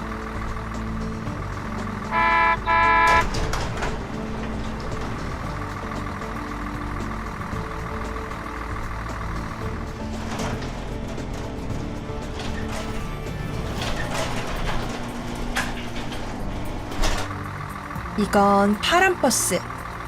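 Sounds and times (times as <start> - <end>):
light background music: 0.0 - 20.0
cartoon bus horn honks: 2.1 - 3.5.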